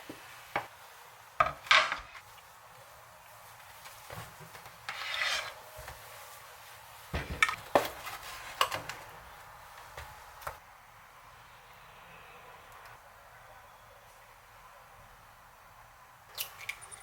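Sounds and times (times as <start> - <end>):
scrape on cutting board: 4.9 - 5.6.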